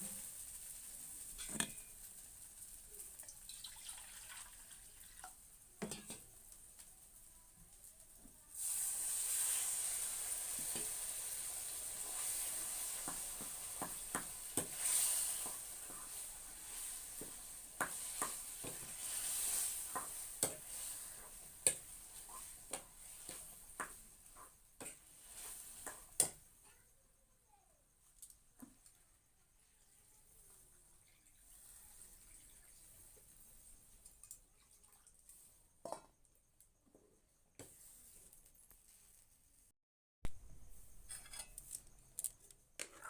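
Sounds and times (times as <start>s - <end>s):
food sizzling in hot oil: 0.0s - 26.7s, 29.6s - 34.5s.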